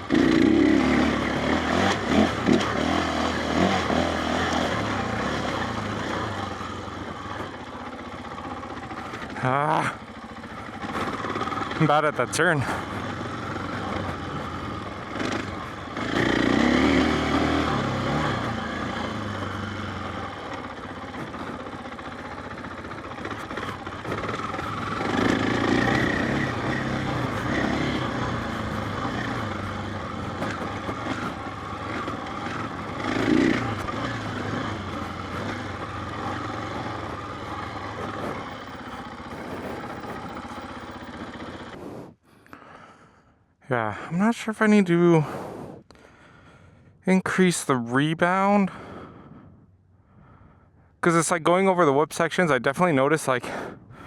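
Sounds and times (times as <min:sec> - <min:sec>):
dirt bike engine revving: 0:00.0 - 0:42.9.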